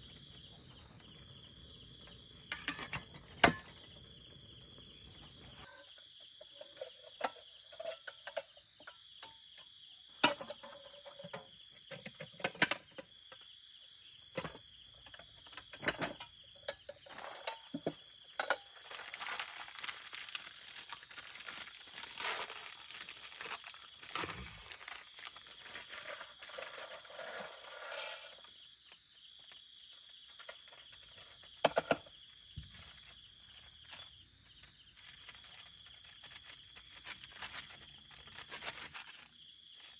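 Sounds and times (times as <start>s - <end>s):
crickets chirring: 0.0s - 39.9s
close rustling and crinkling: 18.4s - 27.9s, 32.4s - 39.9s.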